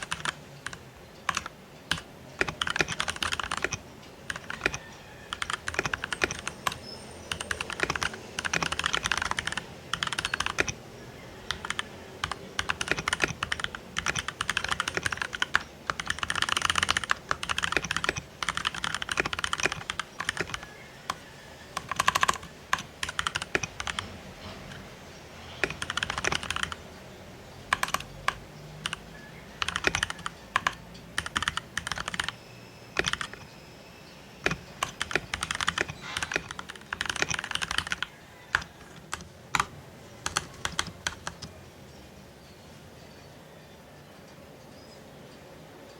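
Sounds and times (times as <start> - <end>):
mechanical keyboard key clicks: 0.0 - 10.8, 25.6 - 26.8, 29.6 - 32.3, 33.0 - 33.4, 34.5 - 39.7.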